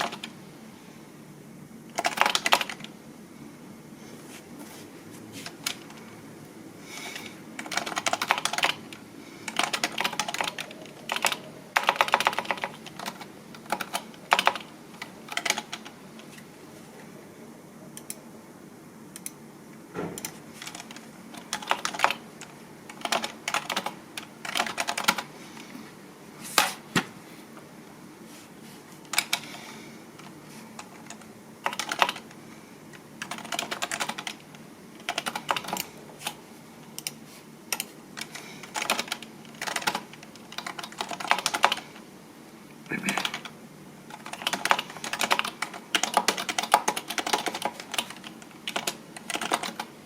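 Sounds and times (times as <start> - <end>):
typing on a keyboard: 0.0 - 0.3, 1.9 - 2.9, 7.6 - 15.9, 20.2 - 25.3, 29.1 - 29.5, 30.2 - 32.4, 33.2 - 36.4, 37.0 - 42.0, 43.1 - 43.5, 44.1 - 49.9.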